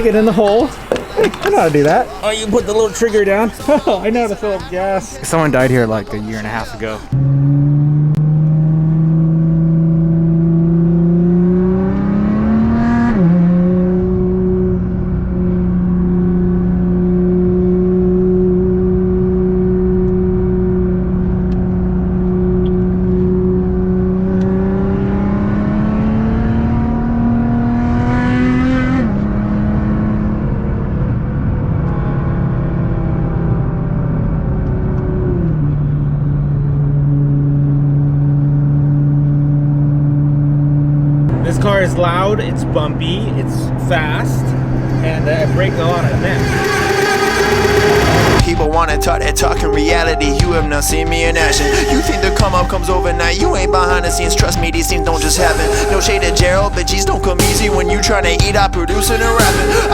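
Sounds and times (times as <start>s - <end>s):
car engine shifting gears: 7.0s - 39.8s, 40.8s - 59.9s.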